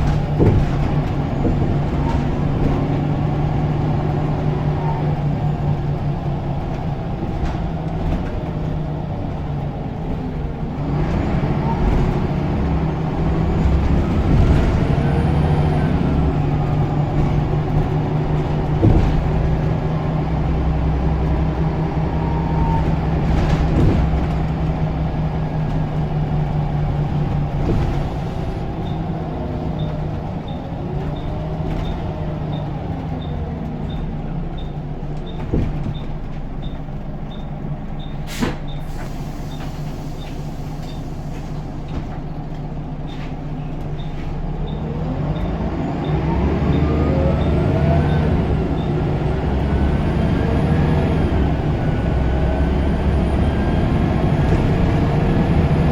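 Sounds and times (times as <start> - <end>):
knocks: 0.0 - 3.1
bus diesel engine pulling: 0.0 - 55.9.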